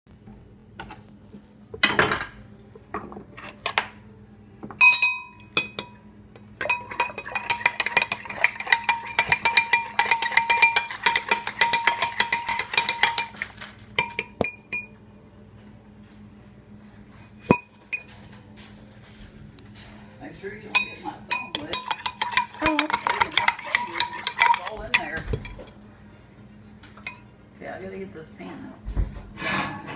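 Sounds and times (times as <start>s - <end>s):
spoon stirring in a cup: 4.8s - 14.9s, 20.7s - 25.8s.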